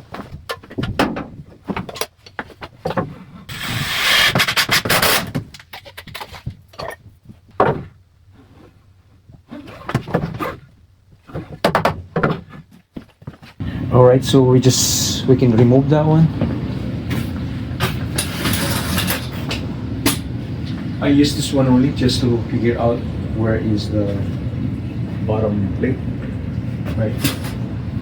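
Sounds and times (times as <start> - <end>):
wood scraping: 1.5 - 6.6.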